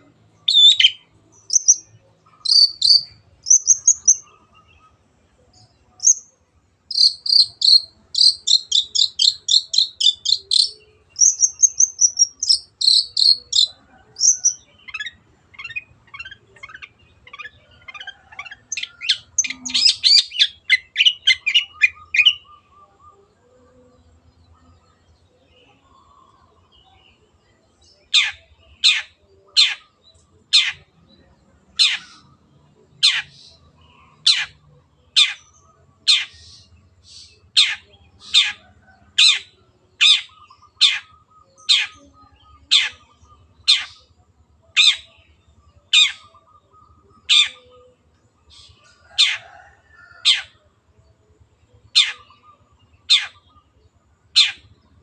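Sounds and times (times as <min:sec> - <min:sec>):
bird harsh call notes: 0:06.9 - 0:14.5.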